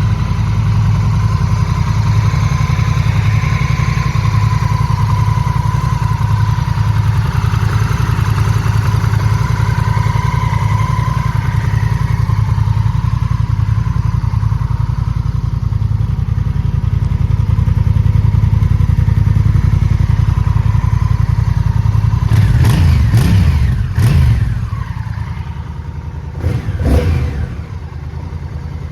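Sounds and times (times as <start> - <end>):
motorcycle engine idling: 0.0 - 28.9
short sharp engine bursts: 26.4 - 27.9.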